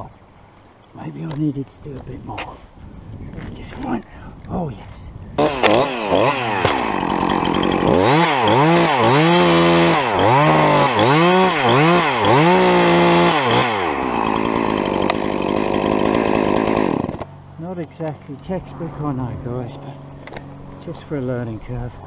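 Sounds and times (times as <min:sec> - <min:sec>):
chainsaw revving: 0:05.4 - 0:17.4.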